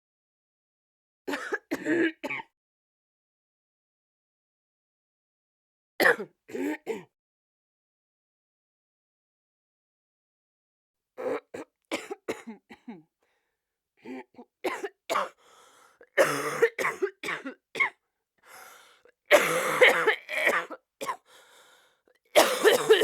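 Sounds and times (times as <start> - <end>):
person coughing: 11.6 - 13.0, 14.1 - 15.4, 16.2 - 17.9, 19.3 - 21.2, 22.4 - 23.0.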